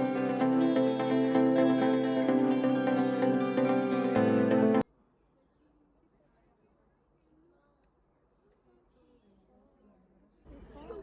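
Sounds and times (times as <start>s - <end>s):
background music with steady beat: 0.0s - 4.8s.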